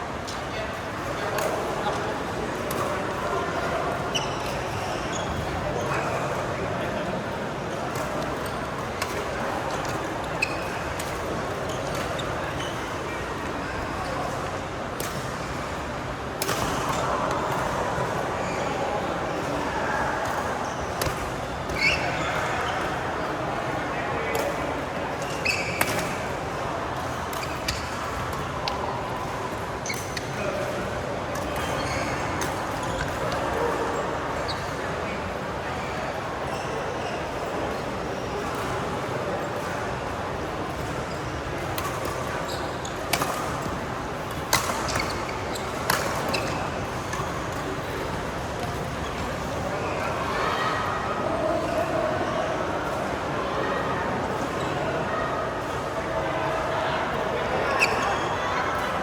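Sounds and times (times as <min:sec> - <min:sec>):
steady hall hum: 0:00.0 - 0:59.0
rackets hitting shuttlecock: 0:41.8 - 0:47.7
racket hitting shuttlecock: 0:44.4 - 0:46.5.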